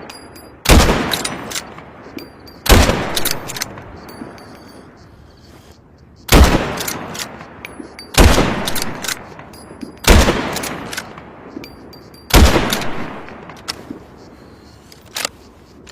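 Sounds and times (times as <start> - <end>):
rifle shots with echo: 0.6 - 2.0, 2.6 - 3.9, 6.3 - 7.5, 8.1 - 11.5, 12.3 - 13.6
faint small clicks: 13.4 - 15.9.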